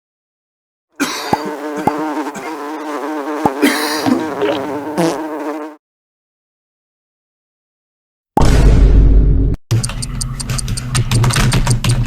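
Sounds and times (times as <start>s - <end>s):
insect buzzing: 1.0s - 5.8s.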